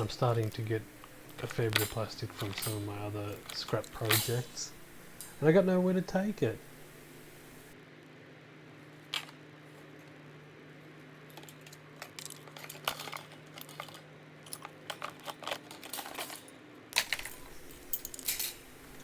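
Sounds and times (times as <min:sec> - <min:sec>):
faint steady hum: 0:00.0 - 0:12.4, 0:16.0 - 0:19.0
sharp clicks and light clatter: 0:00.1 - 0:05.4.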